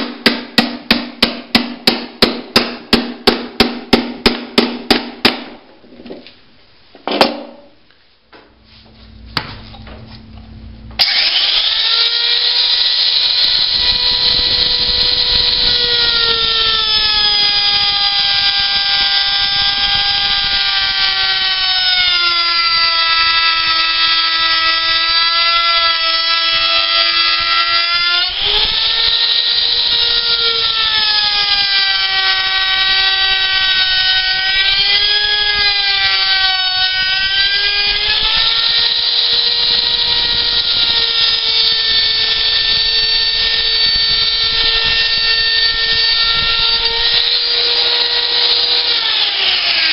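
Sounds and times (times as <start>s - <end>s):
power tool cutting wood: 11.0s - 49.9s.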